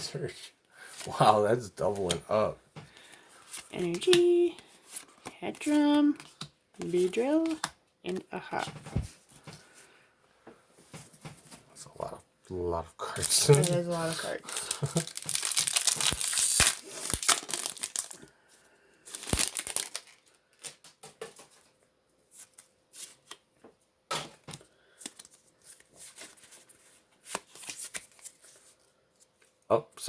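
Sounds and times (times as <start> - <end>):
trading cards rustling and tapping: 1.9 - 9.7, 13.2 - 18.2, 19.1 - 21.7
foil wrapper crinkling: 13.0 - 18.3, 19.1 - 20.9.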